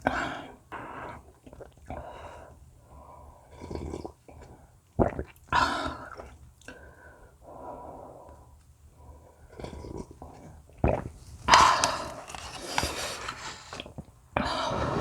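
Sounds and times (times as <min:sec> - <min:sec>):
breathing through the nose: 0:11.5 - 0:15.0.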